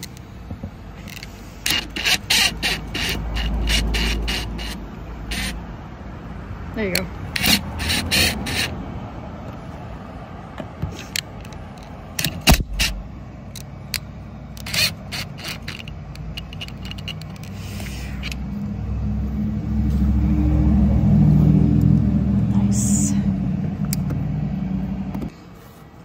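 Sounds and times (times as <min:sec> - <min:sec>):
vehicle engine rumbling: 0:00.0 - 0:26.0
sharp clicks and knocks: 0:10.6 - 0:17.6.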